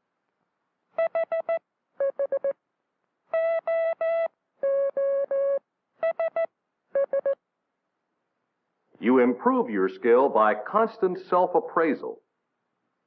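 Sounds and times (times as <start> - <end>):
morse code tone beeps: 1.0 - 2.6, 3.4 - 7.4.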